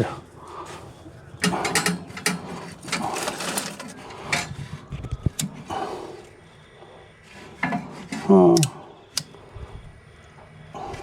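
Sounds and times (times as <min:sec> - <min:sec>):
wood scratching and rustling: 0:01.5 - 0:05.1.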